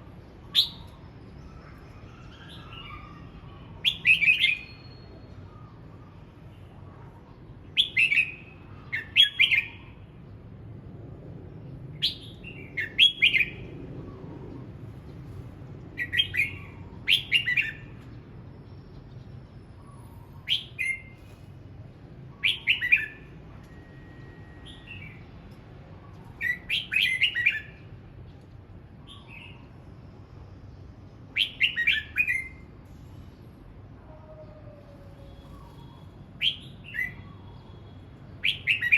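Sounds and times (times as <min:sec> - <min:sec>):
bird whistling song: 0:00.5 - 0:05.9, 0:07.7 - 0:10.0, 0:12.0 - 0:14.3, 0:16.0 - 0:18.1, 0:19.8 - 0:21.4, 0:22.3 - 0:25.2, 0:26.0 - 0:27.9, 0:31.3 - 0:32.7, 0:35.2 - 0:38.9.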